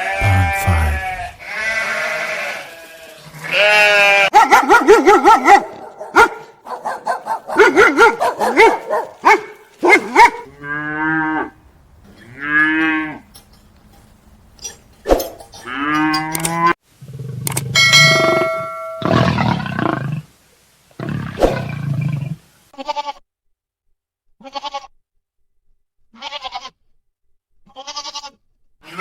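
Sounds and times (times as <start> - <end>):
quavering bleats: 0.0 - 4.4, 8.9 - 11.6, 12.2 - 13.3, 22.7 - 23.2, 24.4 - 25.0, 26.1 - 26.8, 27.7 - 29.0.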